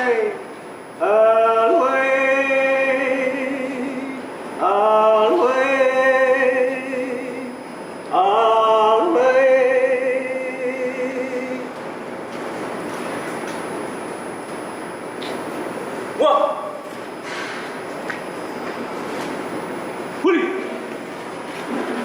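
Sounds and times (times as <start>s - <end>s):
person singing unaccompanied: 1.0s - 11.7s.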